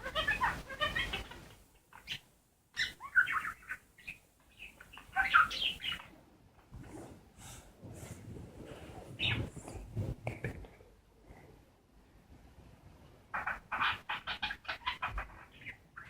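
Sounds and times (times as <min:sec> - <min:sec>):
budgerigars chattering: 0:02.8 - 0:06.0.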